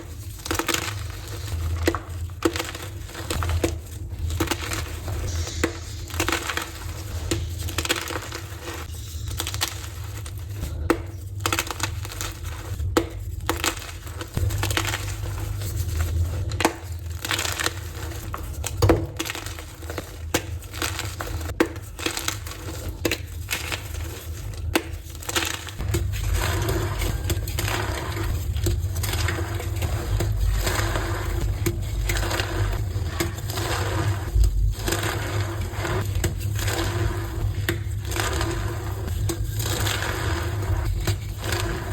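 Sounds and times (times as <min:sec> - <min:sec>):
chalk blocks crunching and squeaking: 0:00.0 - 0:41.9.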